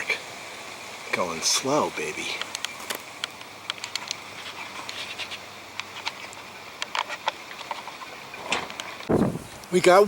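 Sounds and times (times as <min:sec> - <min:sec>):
steady hiss: 0:00.0 - 0:10.0
light clicks and ticks: 0:02.3 - 0:04.2.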